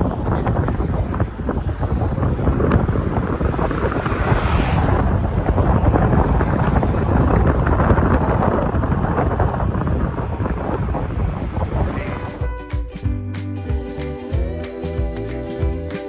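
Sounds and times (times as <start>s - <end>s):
wind buffeting microphone: 0.0s - 12.5s.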